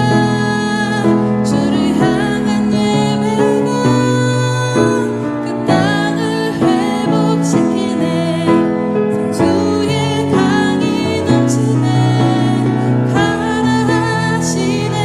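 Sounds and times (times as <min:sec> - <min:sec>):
slow gospel ballad with piano: 0:00.0 - 0:15.0.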